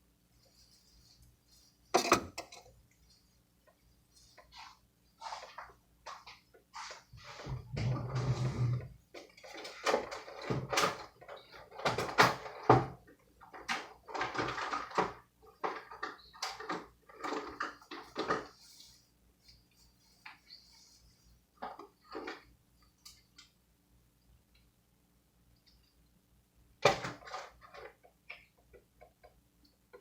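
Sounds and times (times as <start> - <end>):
dishes and utensils clattering: 2.0 - 2.7.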